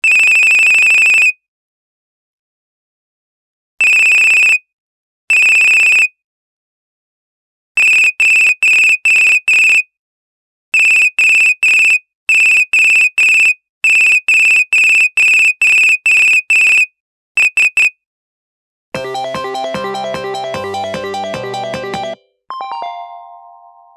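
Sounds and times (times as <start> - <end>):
phone ringtone beeping: 19.0 - 23.9.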